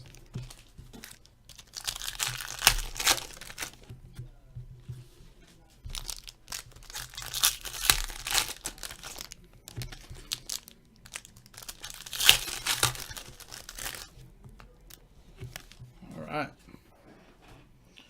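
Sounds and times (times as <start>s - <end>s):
wrappers tearing and crinkling: 0.0s - 3.8s, 5.9s - 14.2s.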